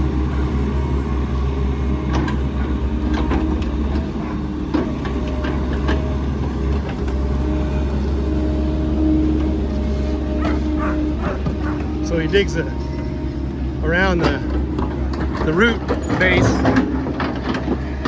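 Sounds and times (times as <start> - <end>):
diesel digger engine running: 0.0 - 18.0
knocks and clanks of digging: 1.8 - 7.8, 14.1 - 18.0.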